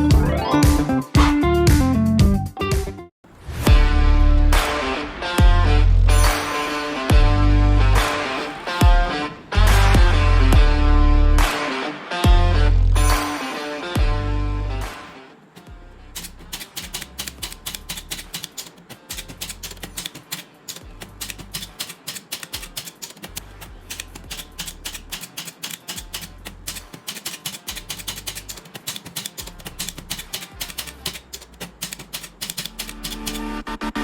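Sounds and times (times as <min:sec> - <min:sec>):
background music with bass line: 0:00.0 - 0:13.4, 0:14.0 - 0:15.1
typewriter keys clacking: 0:15.6 - 0:33.5.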